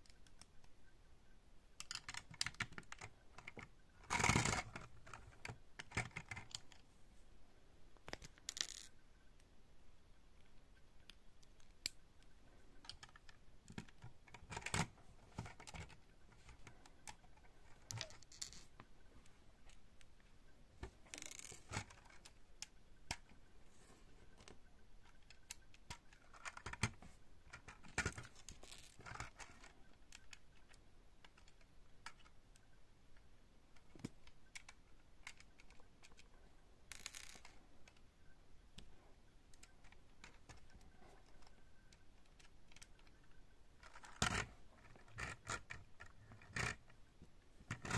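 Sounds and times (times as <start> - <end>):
plastic bricks clicking together: 1.8 - 6.8, 8.0 - 8.9, 36.9 - 38.0.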